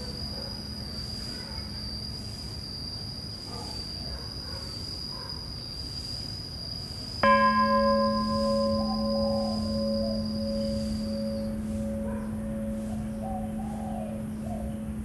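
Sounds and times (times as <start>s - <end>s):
insects droning: 0.0s - 15.0s
temple bell ringing: 7.2s - 15.0s.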